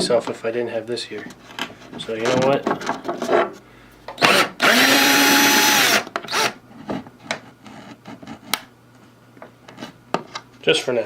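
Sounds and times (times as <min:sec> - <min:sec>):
cordless power drill running: 0:04.2 - 0:06.6.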